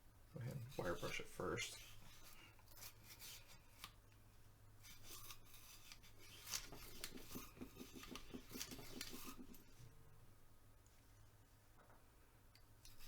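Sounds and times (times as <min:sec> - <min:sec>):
wire brush scrubbing metal: 0:00.6 - 0:03.9, 0:04.8 - 0:09.7.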